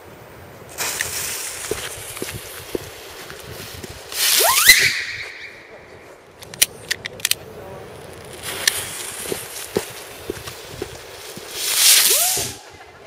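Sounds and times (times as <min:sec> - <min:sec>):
firework cracks: 0:00.7 - 0:05.7, 0:06.5 - 0:12.8
whistling firework: 0:04.2 - 0:05.7, 0:11.5 - 0:12.9.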